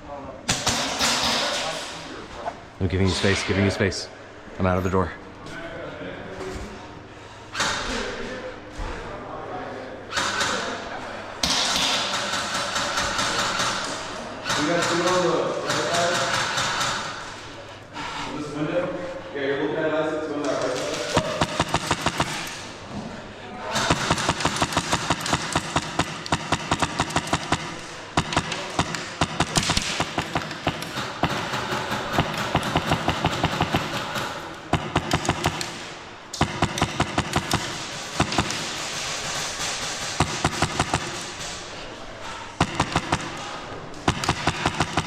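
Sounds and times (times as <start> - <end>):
airsoft guns firing bursts: 11.4 - 17.4, 20.7 - 22.7, 23.7 - 41.6, 42.6 - 45.0.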